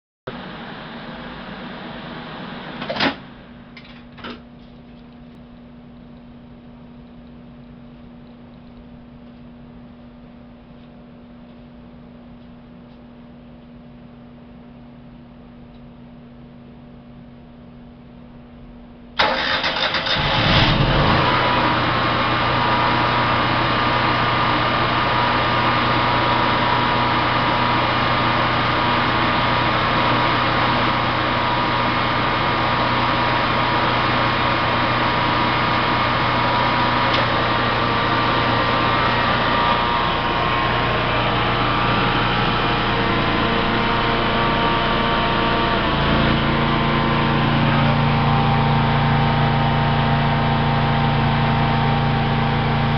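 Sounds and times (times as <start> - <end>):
generator engine cranking and running: 19.2 - 52.9.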